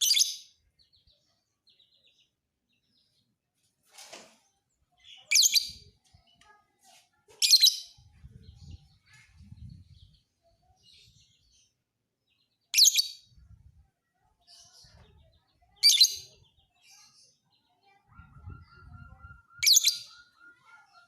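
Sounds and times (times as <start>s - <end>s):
lovebird shrill chirping: 18.4s - 20.7s.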